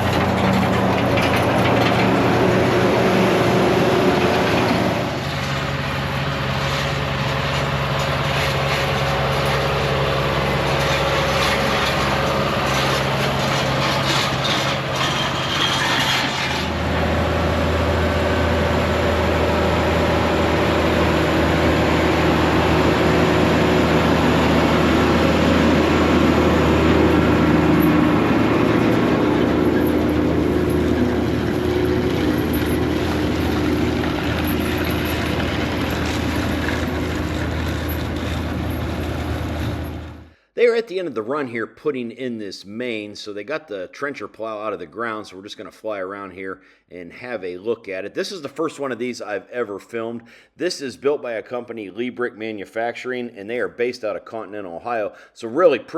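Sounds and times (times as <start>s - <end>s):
tractor diesel engine under load: 0.0s - 40.4s.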